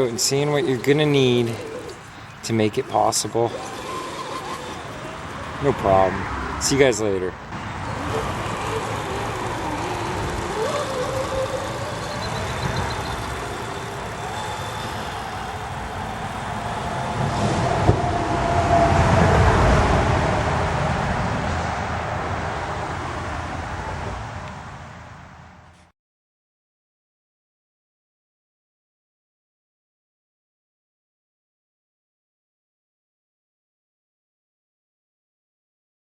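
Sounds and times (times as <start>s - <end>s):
vehicle passing by: 0.0s - 25.8s.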